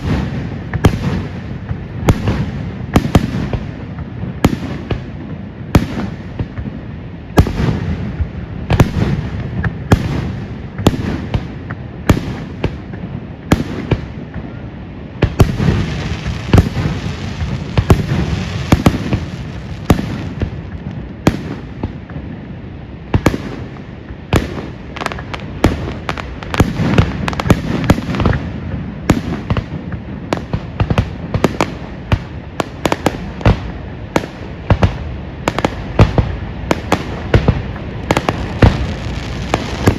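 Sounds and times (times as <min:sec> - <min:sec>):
fireworks bangs: 0:00.0 - 0:39.9
fireworks crackling: 0:00.0 - 0:39.9.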